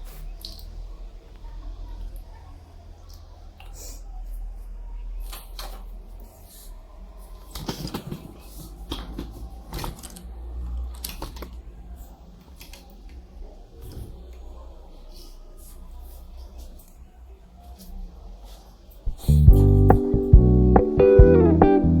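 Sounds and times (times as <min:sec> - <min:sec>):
steady low hum: 0:19.1 - 0:22.0.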